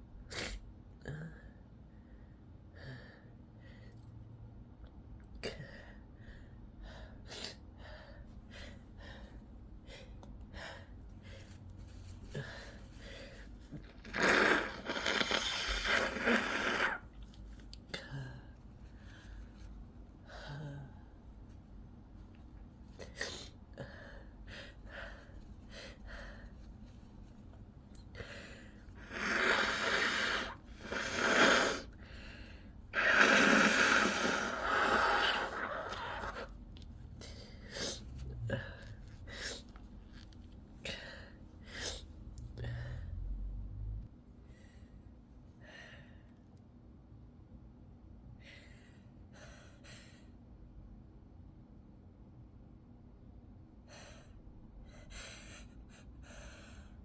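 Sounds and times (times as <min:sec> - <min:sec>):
noisy breaths through nose: 0:28.2 - 0:36.5
person gasping and sniffing: 0:28.2 - 0:36.5.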